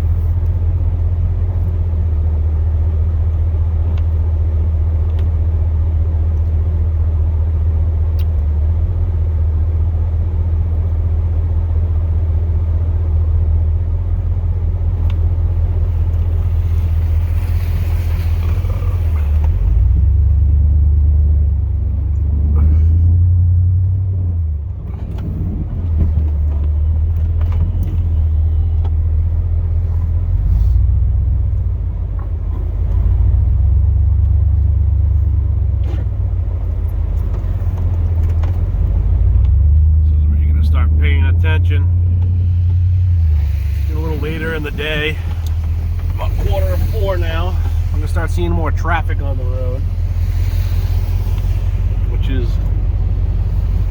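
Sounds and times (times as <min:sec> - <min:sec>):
engine low rumble: 0:00.0 - 0:53.9
hissing rush: 0:15.8 - 0:20.0, 0:42.3 - 0:53.9.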